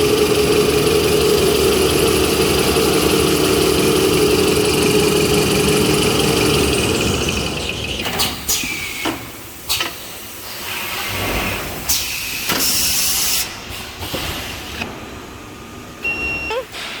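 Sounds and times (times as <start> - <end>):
machine running: 0.0 - 8.5.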